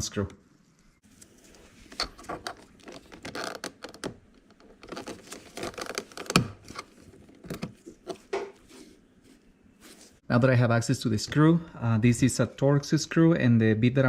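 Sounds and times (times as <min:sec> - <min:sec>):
plastic clicks and scrapes: 0:01.5 - 0:08.8.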